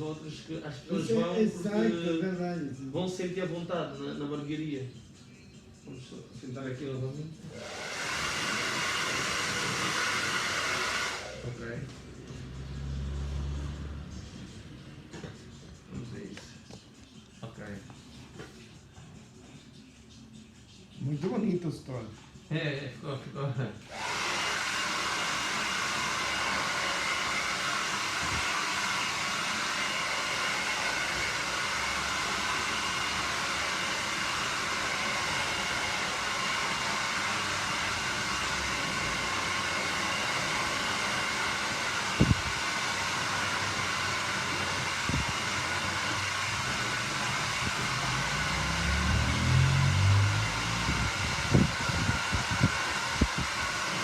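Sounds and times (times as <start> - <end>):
hair dryer blowing: 7.5 - 14.5, 23.9 - 54.0.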